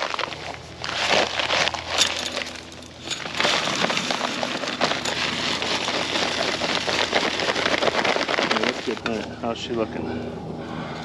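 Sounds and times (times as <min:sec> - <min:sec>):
dry concrete mix pouring: 0:00.0 - 0:09.2.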